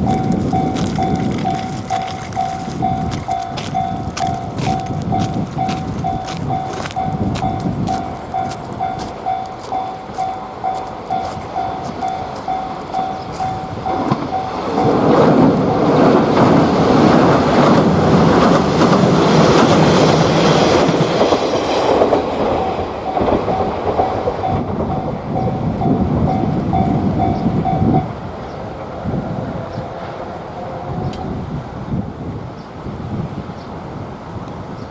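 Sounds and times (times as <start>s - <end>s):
level crossing warning bell: 0.0s - 16.3s, 19.3s - 28.8s
diesel train passing: 0.0s - 34.9s.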